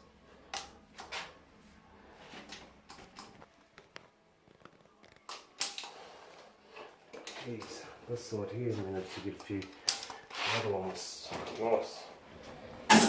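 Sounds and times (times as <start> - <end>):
clicks and knocks of handling tools: 0.5 - 1.3, 4.6 - 6.0, 6.8 - 7.8, 9.4 - 10.4.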